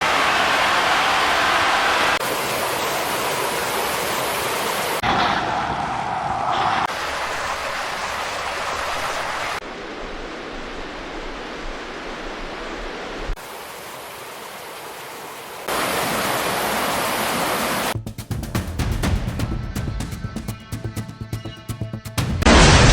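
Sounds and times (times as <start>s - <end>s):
rushing floodwater roar: 0.0s - 5.9s, 6.5s - 18.0s
music with heavy hits: 18.0s - 22.9s.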